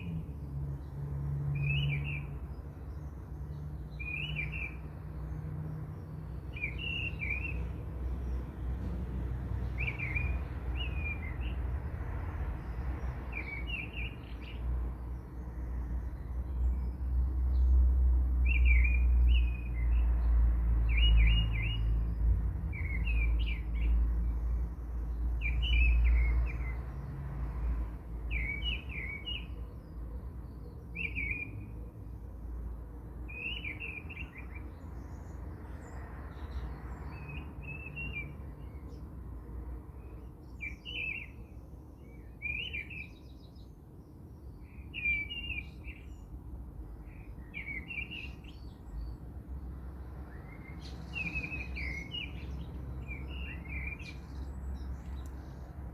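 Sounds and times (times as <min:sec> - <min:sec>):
bird chirping: 0:05.9 - 0:08.4, 0:42.0 - 0:46.3, 0:47.1 - 0:49.2, 0:50.3 - 0:55.9.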